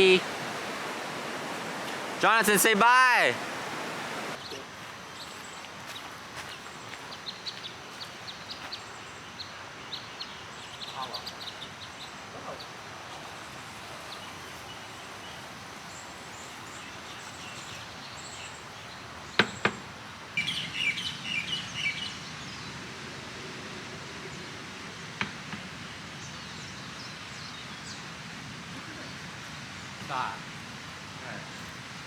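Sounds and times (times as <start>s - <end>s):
birds chirping: 0.0s - 19.8s, 20.4s - 22.9s
outdoor background hiss: 0.0s - 32.0s.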